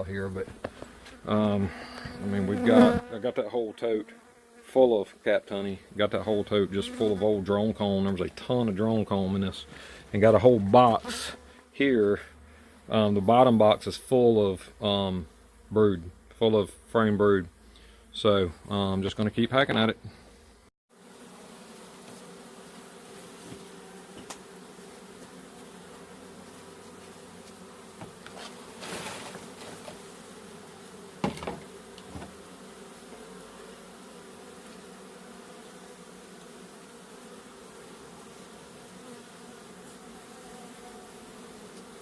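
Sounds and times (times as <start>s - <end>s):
honey bees buzzing: 0.0s - 42.0s
scraping rustle: 28.2s - 30.0s.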